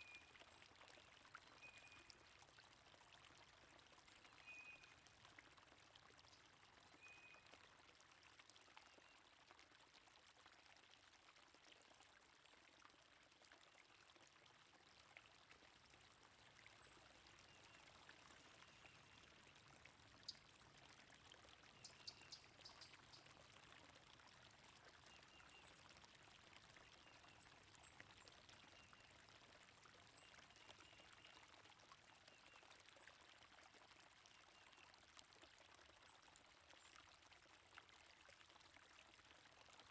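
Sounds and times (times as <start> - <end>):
stream flowing: 14.6 - 34.4.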